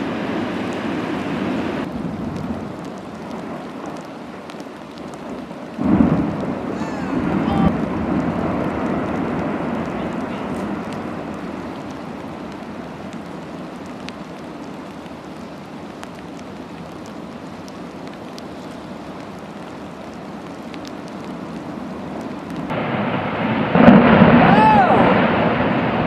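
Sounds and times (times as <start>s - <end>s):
glacier ice rumbling: 5.8s - 13.1s, 22.6s - 26.0s
water washing: 5.8s - 13.3s.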